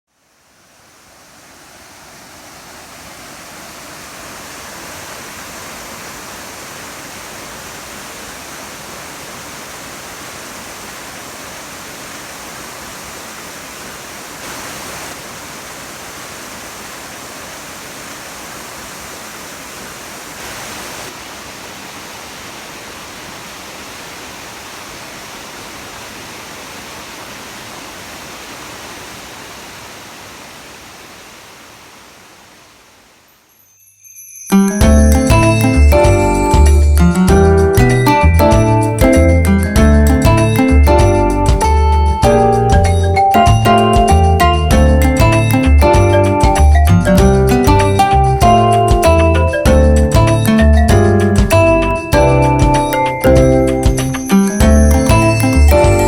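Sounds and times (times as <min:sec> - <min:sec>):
waterfall roaring: 0:00.2 - 0:33.3.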